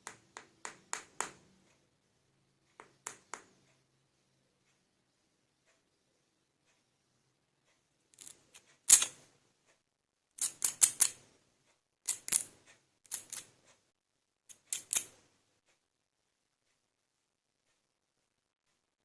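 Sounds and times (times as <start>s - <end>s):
plastic toy pieces clicking: 8.2s - 9.1s, 10.4s - 11.2s, 12.1s - 12.5s, 13.1s - 13.5s, 14.5s - 15.1s.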